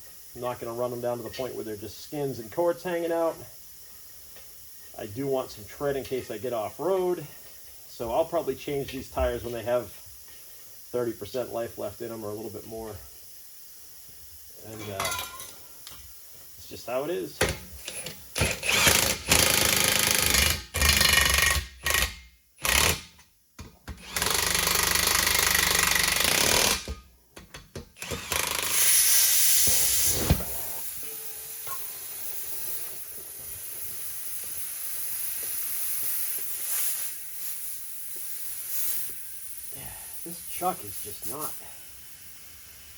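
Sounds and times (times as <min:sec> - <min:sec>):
compressed air hissing: 0:00.0 - 0:20.1, 0:28.0 - 0:42.9
pneumatic impact wrench: 0:17.4 - 0:41.7.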